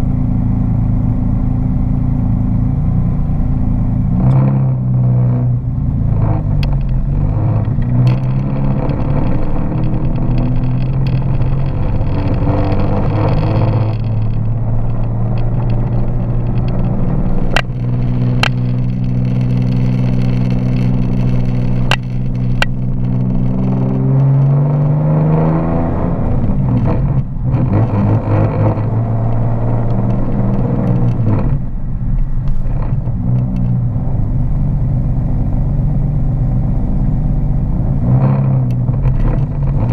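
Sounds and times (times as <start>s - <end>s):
car engine revving on the move: 0.0s - 39.9s
sharp clicks: 6.6s - 24.6s.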